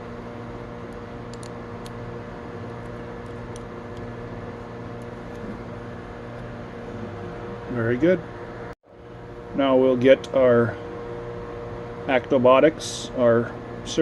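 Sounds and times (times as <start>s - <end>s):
steady room hum: 0.0s - 14.0s.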